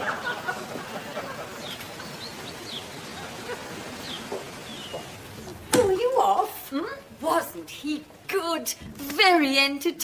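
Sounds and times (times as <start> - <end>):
faint outdoor background: 0.0 - 10.0
small birds chirping: 1.1 - 6.6.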